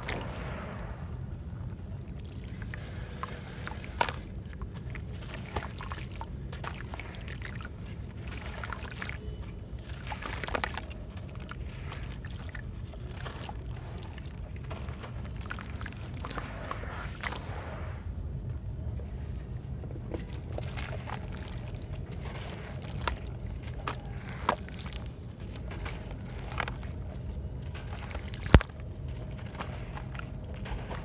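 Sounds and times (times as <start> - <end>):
cement crumbling in water: 0.0 - 4.2
sharp crackles: 0.0 - 4.3, 13.0 - 18.6, 22.0 - 31.0
low hum: 0.0 - 31.0
water sloshing and trickling: 0.0 - 31.0.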